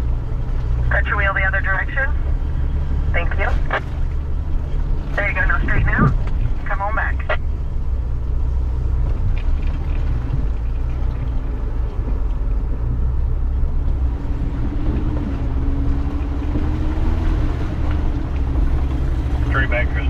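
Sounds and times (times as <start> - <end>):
off-road engines rumbling: 0.0 - 20.0
steady engine tone: 0.0 - 20.0.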